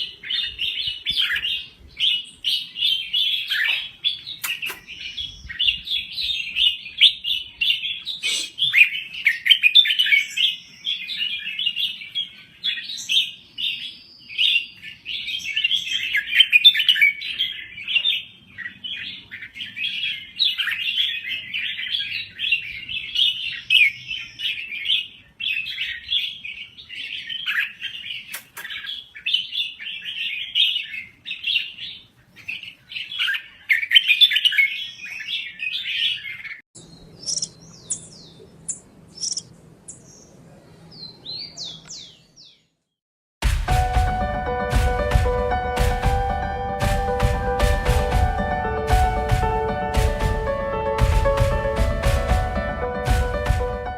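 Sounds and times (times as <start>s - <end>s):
bird chirping and warbling: 0.0s - 42.7s.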